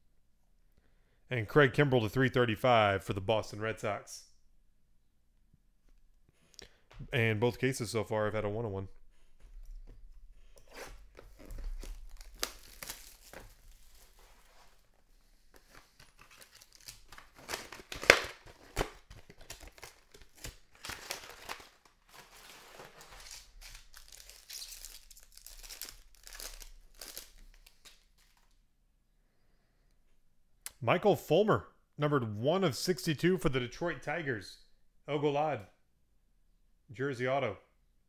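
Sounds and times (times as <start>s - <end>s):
wrapper tearing and crinkling: 11.2s - 14.7s, 15.9s - 28.5s.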